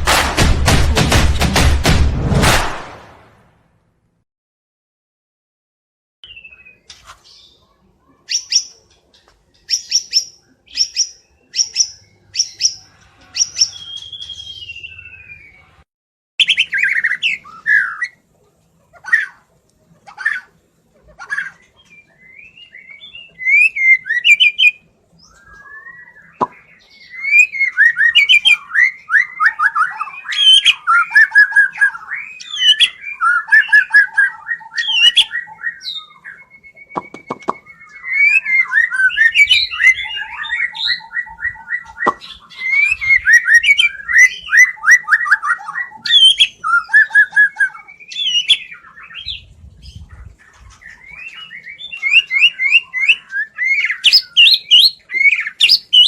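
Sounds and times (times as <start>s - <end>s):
songbird singing varied song: 6.2s - 15.7s, 21.4s - 56.0s.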